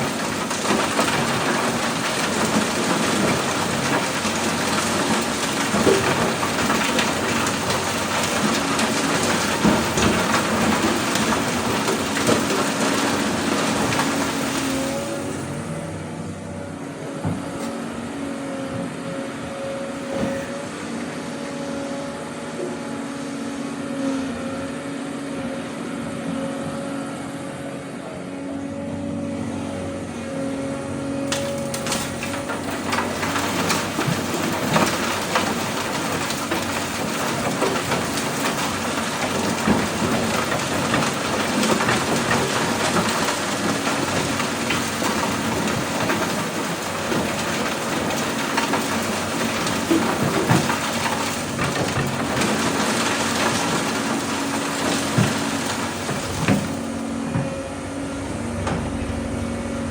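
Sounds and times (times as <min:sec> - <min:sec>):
rock and dirt pouring into truck: 0:00.0 - 0:16.0, 0:31.2 - 0:59.9
excavator diesel engine running: 0:00.0 - 0:59.9.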